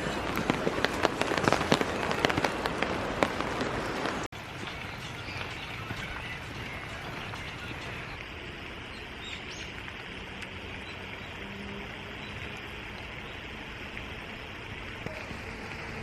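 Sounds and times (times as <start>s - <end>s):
outdoor rushing noise: 0.0s - 8.7s.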